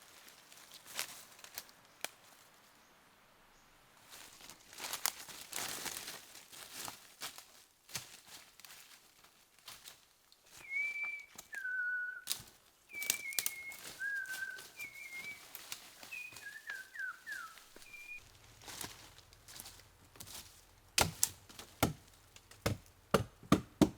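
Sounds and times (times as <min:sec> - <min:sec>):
rustling: 0:00.0 - 0:02.8, 0:04.0 - 0:23.0
whistled notes: 0:10.6 - 0:12.3, 0:12.9 - 0:18.3.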